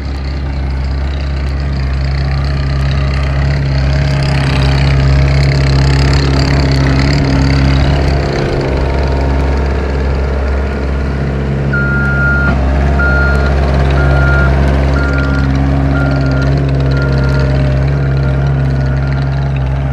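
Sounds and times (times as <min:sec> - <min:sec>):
skid steer engine running: 0:00.0 - 0:19.9
backup alarm beeping: 0:11.7 - 0:17.5.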